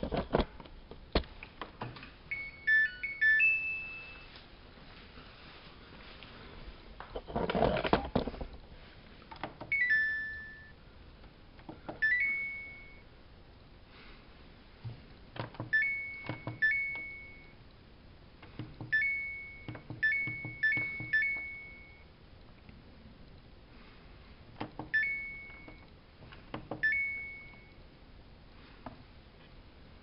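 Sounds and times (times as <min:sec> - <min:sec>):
electronic beep chime: 0:02.3 - 0:04.4, 0:09.7 - 0:10.8, 0:12.0 - 0:13.1, 0:15.7 - 0:17.6, 0:18.9 - 0:22.1, 0:24.9 - 0:25.8, 0:26.8 - 0:27.8.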